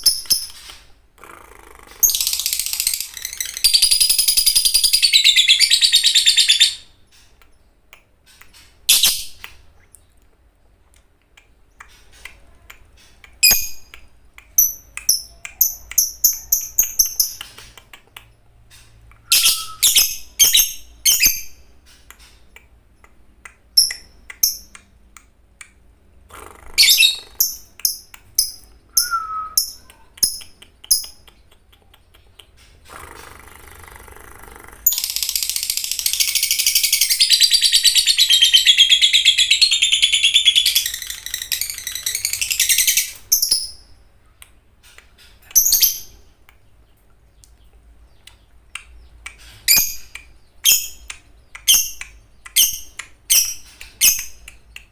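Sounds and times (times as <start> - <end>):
lovebird high chirps: 2.0 - 7.0, 19.2 - 22.4, 26.8 - 31.4, 34.8 - 44.0, 48.1 - 54.5
lovebird shrill chatter: 19.3 - 21.4.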